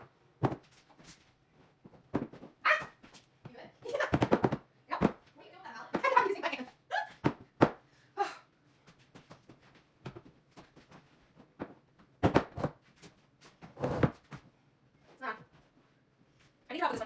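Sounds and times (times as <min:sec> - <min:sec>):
couch pieces knocking and scraping: 0:00.4 - 0:01.2, 0:01.8 - 0:03.3, 0:03.9 - 0:05.3, 0:09.3 - 0:12.8, 0:13.4 - 0:14.4.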